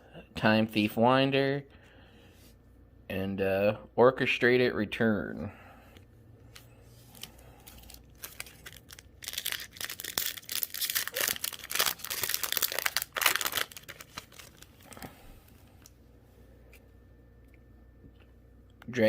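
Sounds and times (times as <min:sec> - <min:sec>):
foil wrapper tearing and crinkling: 0:07.2 - 0:15.1.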